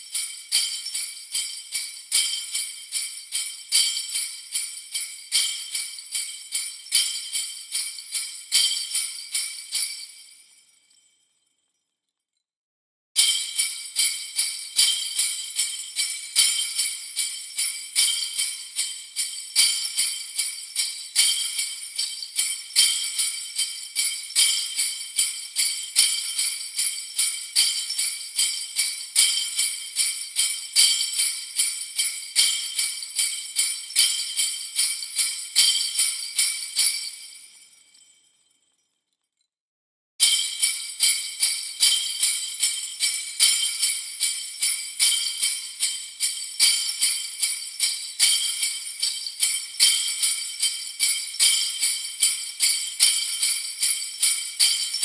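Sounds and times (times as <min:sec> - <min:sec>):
sleigh bells jingling: 0:00.0 - 0:11.0, 0:13.2 - 0:38.2, 0:40.2 - 0:55.0.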